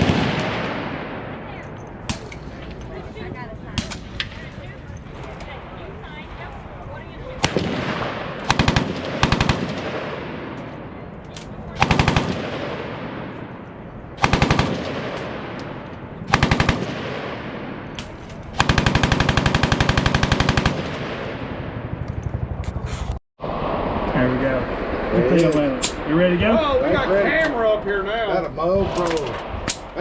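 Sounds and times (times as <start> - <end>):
machine-gun fire: 0.0 - 1.4, 7.4 - 10.9, 11.8 - 13.5, 14.2 - 15.6, 16.2 - 17.9, 18.5 - 21.9.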